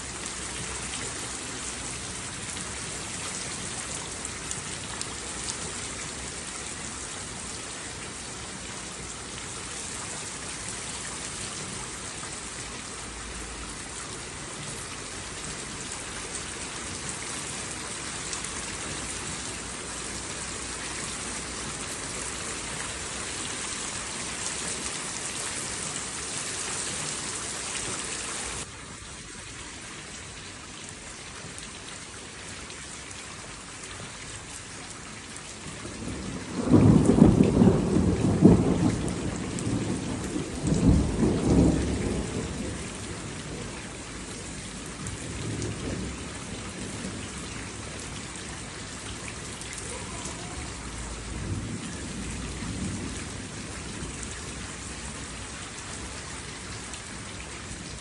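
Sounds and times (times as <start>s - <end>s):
rain falling: 0.0s - 58.0s
thunder rumbling: 36.0s - 48.1s, 50.6s - 54.4s.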